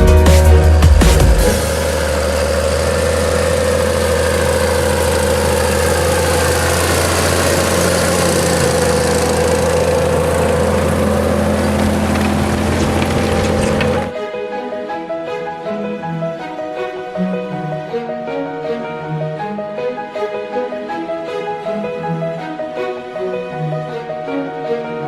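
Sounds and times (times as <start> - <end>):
tractor diesel engine droning: 0.0 - 14.2.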